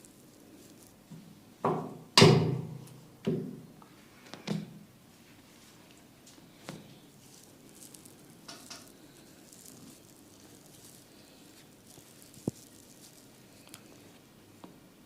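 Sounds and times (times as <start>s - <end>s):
rubbing and rustling on skin and hair: 0.0s - 1.2s, 5.1s - 14.4s.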